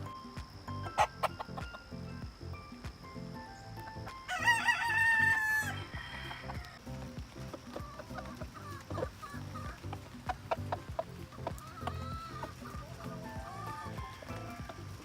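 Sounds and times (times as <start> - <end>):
rooster crowing: 4.2 - 6.8, 11.5 - 15.0.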